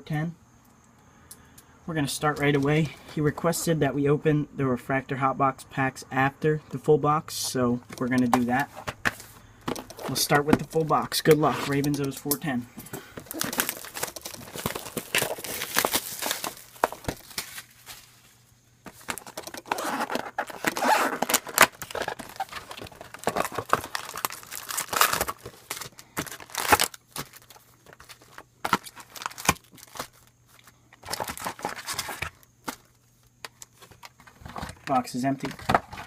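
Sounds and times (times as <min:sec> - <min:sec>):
plastic wrap crinkling and tearing: 0:13.2 - 0:18.2, 0:19.0 - 0:30.4.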